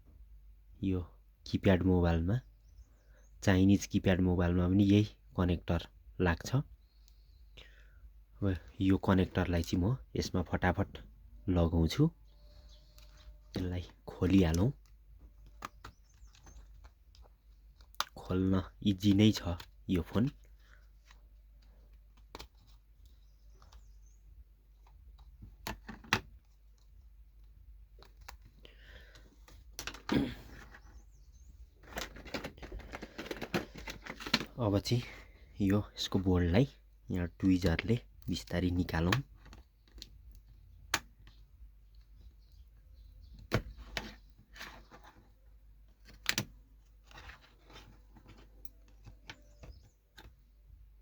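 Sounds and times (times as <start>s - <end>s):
sharp plastic snaps: 14.5s - 18.3s, 20.4s - 24.0s, 24.8s - 28.6s, 39.0s - 42.6s, 45.9s - 46.7s.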